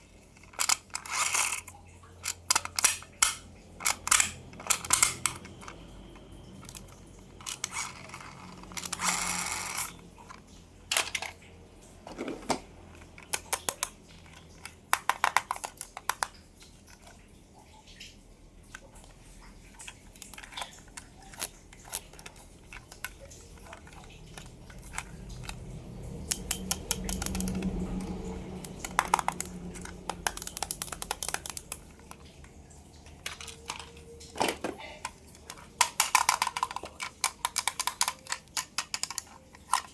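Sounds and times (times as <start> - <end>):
plastic clicks and taps: 12.1 - 16.3, 20.1 - 32.2, 33.2 - 39.9
packaging crinkling: 20.1 - 32.4, 33.2 - 39.9.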